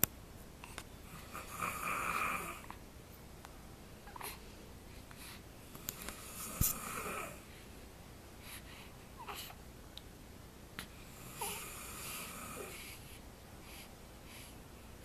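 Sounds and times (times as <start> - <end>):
wheezy snoring: 1.1 - 2.7, 6.1 - 7.4, 11.0 - 13.0.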